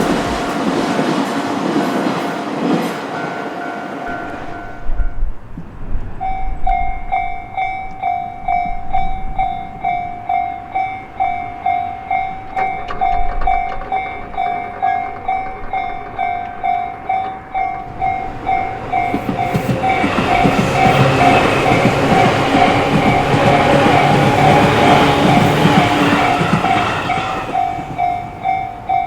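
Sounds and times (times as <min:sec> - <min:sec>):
train rumbling: 0:00.0 - 0:29.0.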